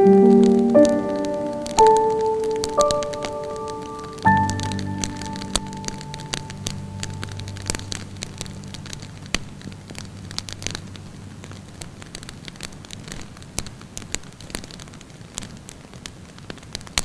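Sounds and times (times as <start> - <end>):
soft music: 0.0 - 12.9.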